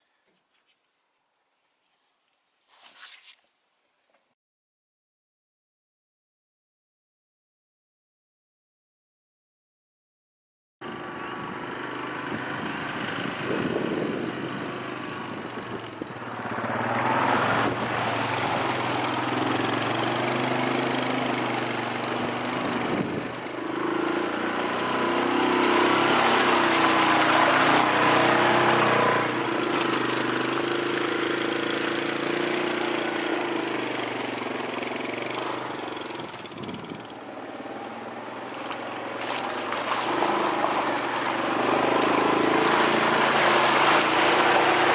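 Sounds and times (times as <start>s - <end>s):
atv engine running: 10.8s - 44.9s.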